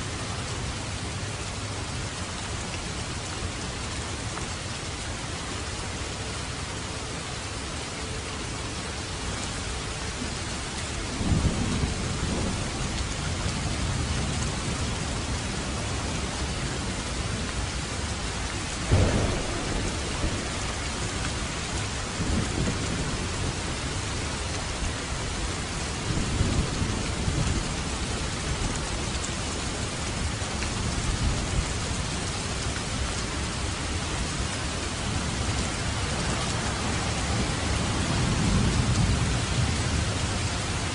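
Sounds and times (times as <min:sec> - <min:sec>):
heavy rain: 0:00.0 - 0:40.9
thunder rumbling: 0:11.1 - 0:17.4, 0:18.0 - 0:29.2.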